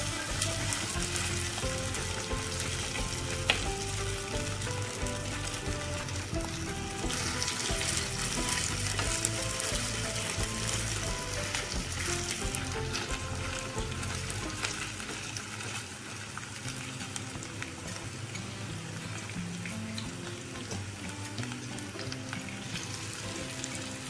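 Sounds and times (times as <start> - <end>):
background music: 0.0 - 24.0
batter frying in hot oil: 0.0 - 24.0.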